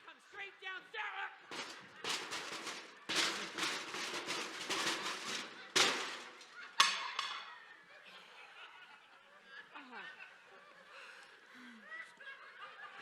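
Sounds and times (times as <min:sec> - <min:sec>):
audience laughing: 0:01.5 - 0:13.0.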